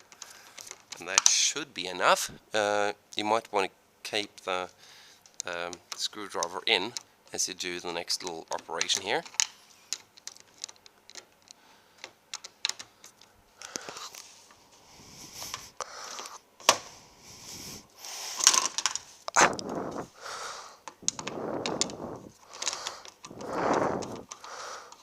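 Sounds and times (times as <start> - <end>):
plastic and metal clicks: 8.5 - 14.0
rubbing or scraping: 19.3 - 20.2, 21.0 - 24.4.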